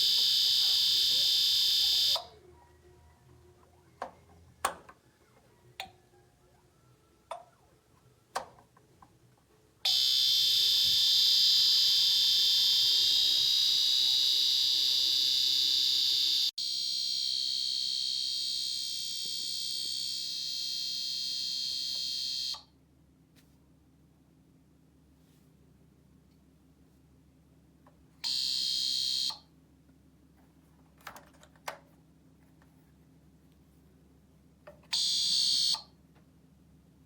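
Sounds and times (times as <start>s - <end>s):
heater electrical buzz: 0.0s - 2.2s, 9.9s - 16.5s.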